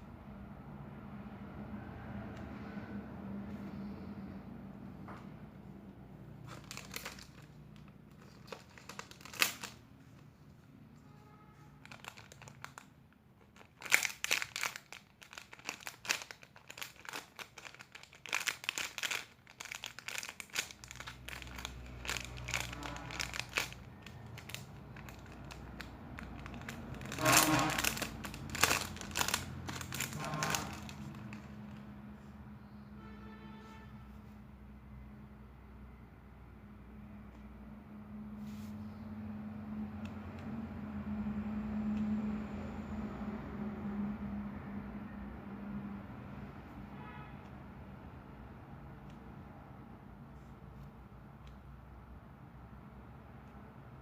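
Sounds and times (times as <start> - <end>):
plastic crinkling: 6.4 - 10.4, 11.8 - 31.9.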